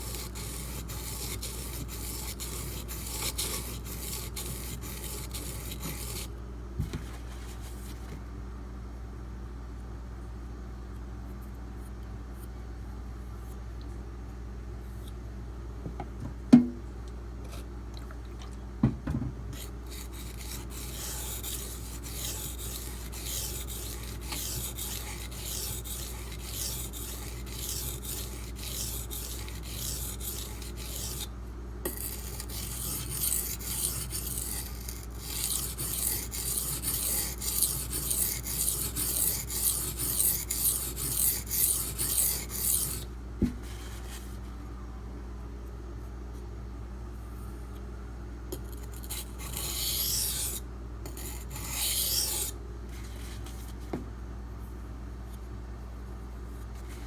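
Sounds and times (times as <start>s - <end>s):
knife scraping on sharpening stone: 0.0s - 6.3s, 19.6s - 31.2s, 31.9s - 43.0s, 48.6s - 52.5s.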